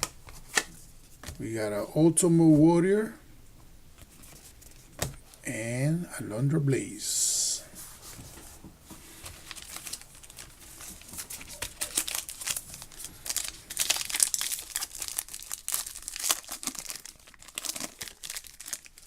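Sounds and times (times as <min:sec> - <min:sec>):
wrapper crinkling and tearing: 0:09.2 - 0:19.0.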